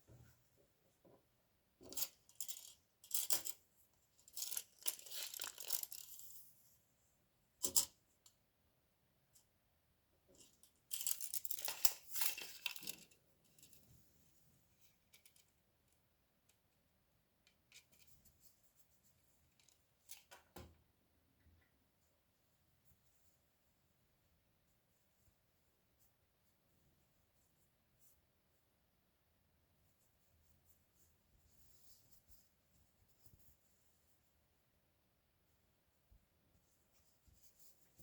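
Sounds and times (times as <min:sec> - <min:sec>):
rustling and handling: 0:00.0 - 0:08.4, 0:10.2 - 0:20.8, 0:29.8 - 0:38.0.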